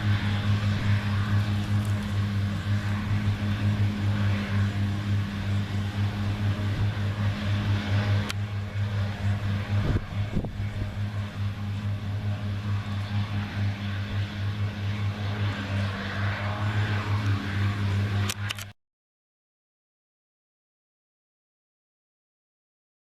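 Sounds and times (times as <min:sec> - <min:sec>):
combine harvester running: 0:00.0 - 0:18.7
sharp click: 0:18.3 - 0:18.7.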